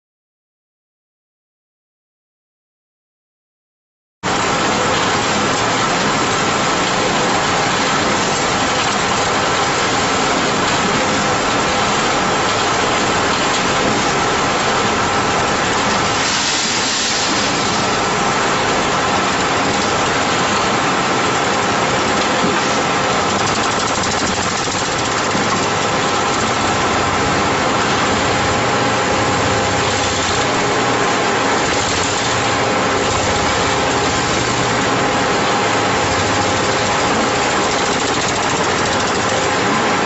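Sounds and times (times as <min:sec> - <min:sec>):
concrete mixer drone: 0:04.2 - 0:40.0
hiss: 0:16.1 - 0:17.9.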